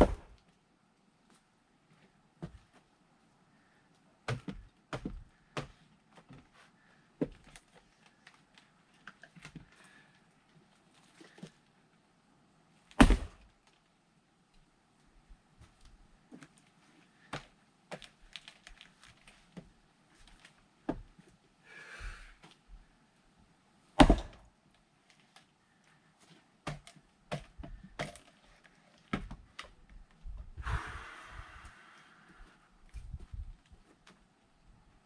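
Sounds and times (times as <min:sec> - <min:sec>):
person breathing: 0:21.6 - 0:22.5, 0:30.6 - 0:32.7.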